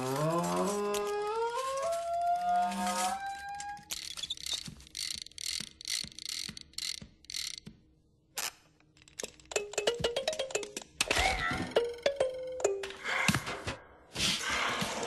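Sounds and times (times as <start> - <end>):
mechanical ratcheting whirs: 3.8 - 7.7
clatter of ticks: 3.9 - 7.6.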